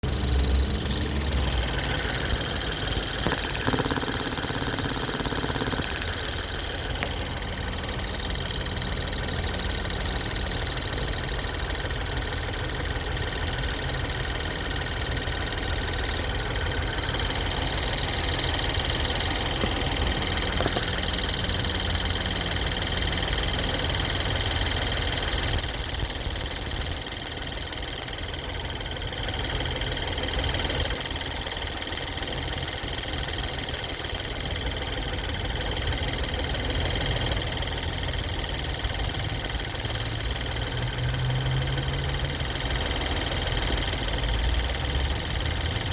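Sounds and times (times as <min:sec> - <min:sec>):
car engine idling: 0:00.0 - 0:31.0
rapid ticking: 0:00.0 - 0:45.9.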